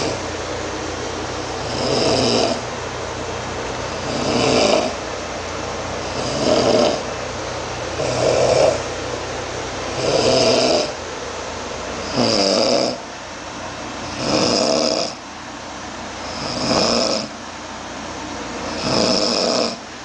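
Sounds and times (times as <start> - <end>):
man snoring: 0.0 - 0.2, 1.6 - 2.7, 3.9 - 5.0, 6.0 - 7.1, 8.0 - 8.9, 9.9 - 11.0, 12.0 - 13.0, 14.0 - 15.2, 16.2 - 17.3, 18.6 - 19.8
steady low hum: 0.0 - 20.0.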